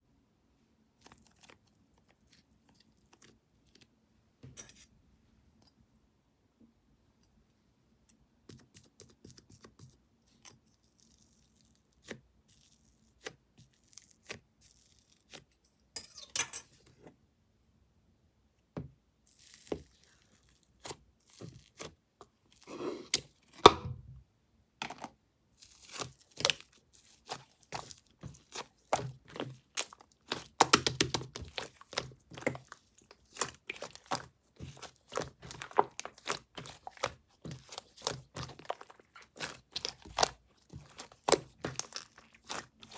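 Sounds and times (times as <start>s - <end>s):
slime squishing and popping: 25.6s - 42.9s.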